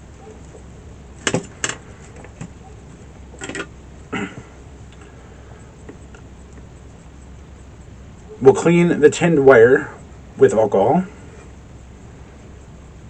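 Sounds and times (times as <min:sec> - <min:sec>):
clattery knocks: 0:01.2 - 0:02.6, 0:03.4 - 0:03.7.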